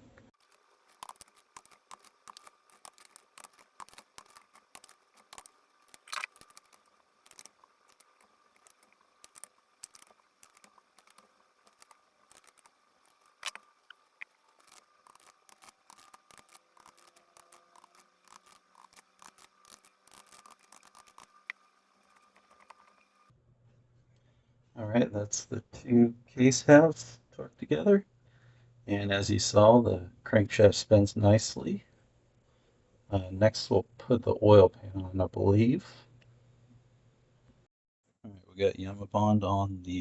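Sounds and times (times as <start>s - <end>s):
torque wrench ratcheting clicks: 0.4s - 23.1s.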